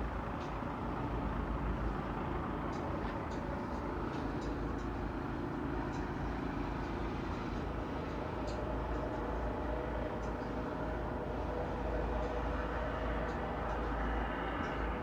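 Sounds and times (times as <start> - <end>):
low rumbling background noise: 0.0 - 15.0
faint light ticks: 2.7 - 5.0, 5.9 - 6.2, 8.1 - 9.2, 10.2 - 10.6.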